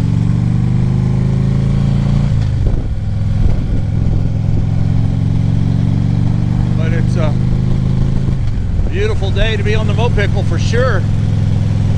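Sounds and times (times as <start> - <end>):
motorcycle engine cruising: 0.0 - 11.9.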